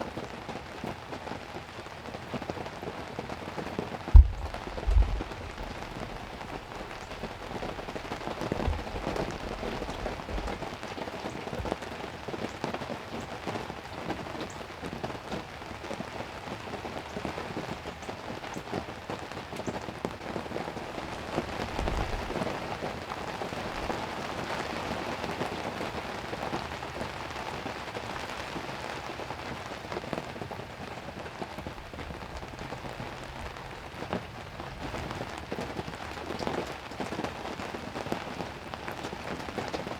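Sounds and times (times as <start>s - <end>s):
heavy rain on a roof: 0.0s - 39.9s
dull low thumps: 4.1s - 10.6s.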